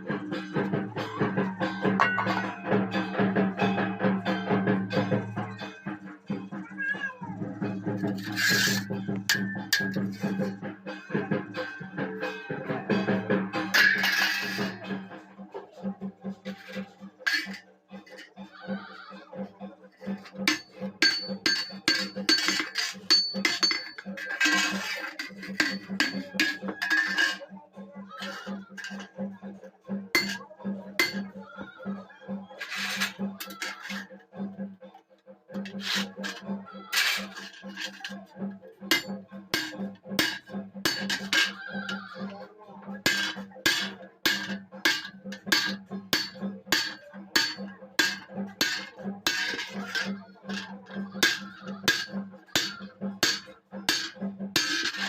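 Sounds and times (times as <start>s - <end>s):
hammer striking iron: 1.8s - 2.9s, 8.0s - 10.5s, 13.1s - 14.9s, 20.3s - 27.4s, 30.2s - 30.4s, 31.0s - 31.3s, 35.6s - 55.0s.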